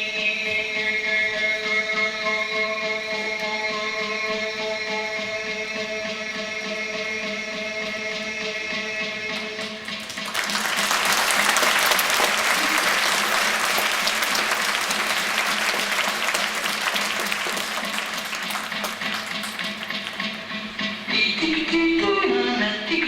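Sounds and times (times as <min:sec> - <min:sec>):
audience applauding: 0:09.9 - 0:20.9.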